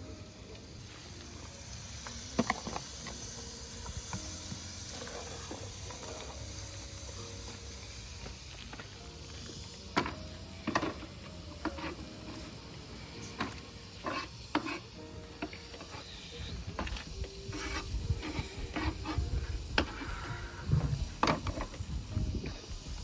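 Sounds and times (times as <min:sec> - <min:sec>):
faint sizzle of stir-frying: 0:00.0 - 0:23.0
utensil scraping against pot: 0:11.6 - 0:12.5, 0:13.4 - 0:15.0, 0:16.8 - 0:20.6.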